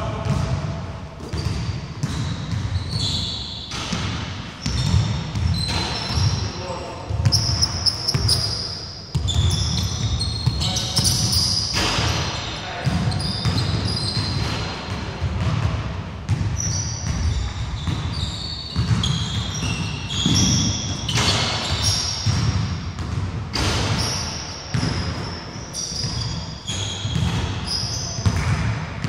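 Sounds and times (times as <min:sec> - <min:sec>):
basketball bouncing on wooden court: 0:00.2 - 0:06.4, 0:07.1 - 0:29.0
sneakers squeaking on floor: 0:01.2 - 0:29.0.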